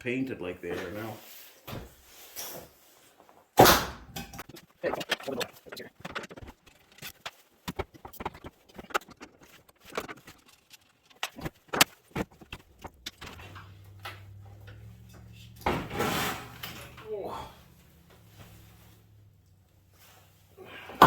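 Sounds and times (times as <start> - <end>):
low steady hum: 13.0 - 20.5.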